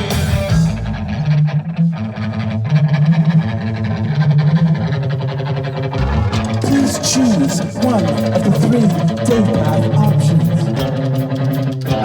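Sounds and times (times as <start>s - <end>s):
electric guitar: 0.0s - 12.0s
bass line: 5.8s - 12.0s.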